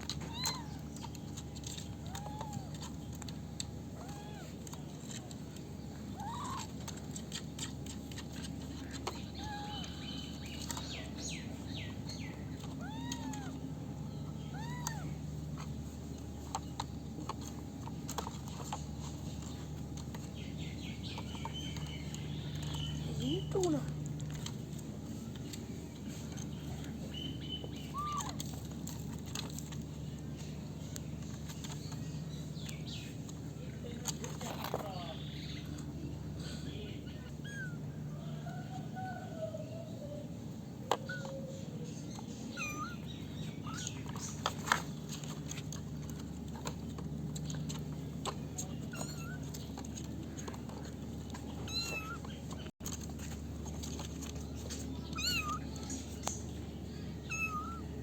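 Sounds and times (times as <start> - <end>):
kittens mewing: 0.0 - 3.0, 3.8 - 4.7, 6.1 - 10.0, 12.6 - 15.8, 27.7 - 29.0, 36.4 - 44.2, 47.7 - 52.7, 54.8 - 56.0, 57.1 - 58.0
steady low hum: 0.0 - 58.0
faint animal calls: 6.0 - 11.2, 12.1 - 15.9, 26.1 - 29.1, 34.4 - 44.4, 47.4 - 53.0, 53.6 - 58.0.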